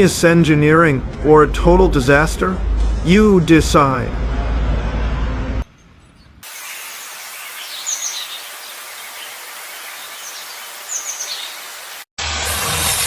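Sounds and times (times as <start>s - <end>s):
outdoor hiss: 6.4s - 12.1s
small bird chirping: 7.3s - 11.8s.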